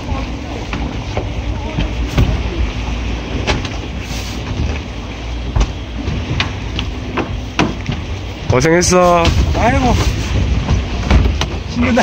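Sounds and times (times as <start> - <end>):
boat engine rumbling: 0.0 - 12.0
sharp knocks: 5.5 - 11.6.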